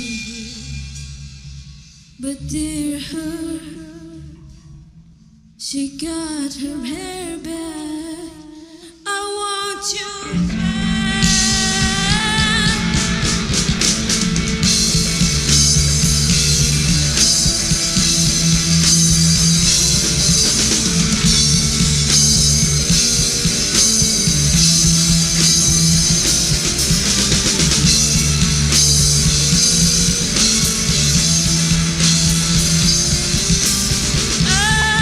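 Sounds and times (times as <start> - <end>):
drum kit: 0.0 - 2.3, 10.3 - 35.0
bass guitar: 0.0 - 5.6, 10.2 - 35.0
electric guitar: 9.8 - 35.0.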